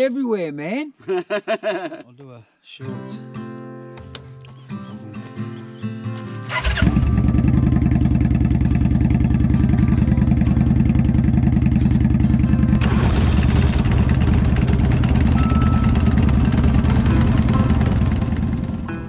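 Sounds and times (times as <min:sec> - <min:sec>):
motorcycle engine idling: 0:06.5 - 0:19.0
harsh rushing noise: 0:12.4 - 0:19.0.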